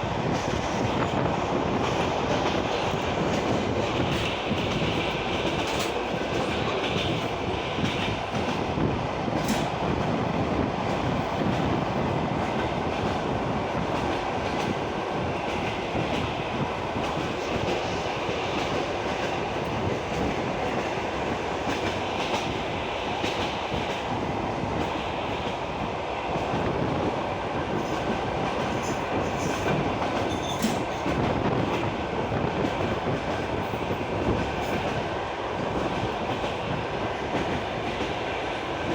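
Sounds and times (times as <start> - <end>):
train wheels rumbling on track: 0.0 - 38.9.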